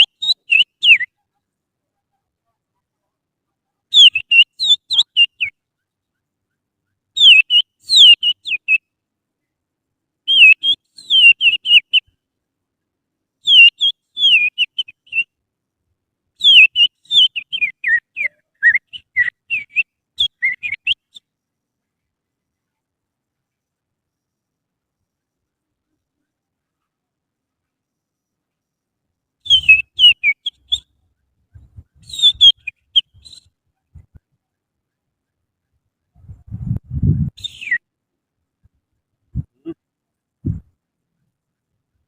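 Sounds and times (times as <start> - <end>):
person whistling bird song: 7.2 - 8.8, 10.3 - 12.1, 13.5 - 15.3, 16.4 - 21.2, 29.4 - 30.9, 32.0 - 33.5, 37.2 - 37.8.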